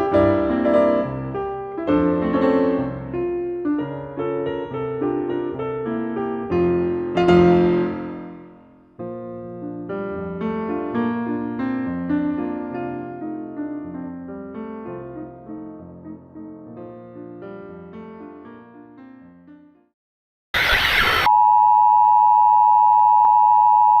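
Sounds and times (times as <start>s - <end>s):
loud electronic beep tone: 20.6s - 24.0s.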